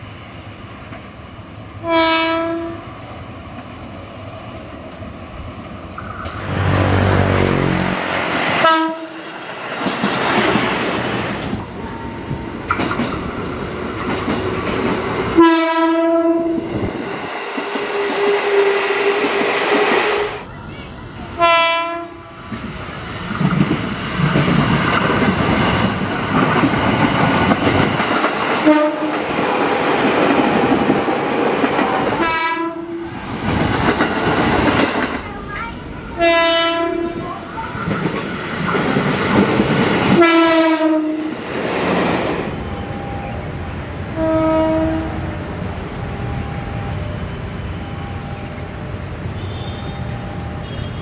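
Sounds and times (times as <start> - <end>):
train rumble and wheel clatter: 0.0 - 51.0
electric train horn blasts: 1.8 - 2.9, 8.6 - 9.2, 15.4 - 16.7, 21.4 - 22.3, 28.6 - 29.2, 32.2 - 33.0, 36.2 - 37.2, 40.1 - 41.3, 44.1 - 45.4, 49.3 - 51.0.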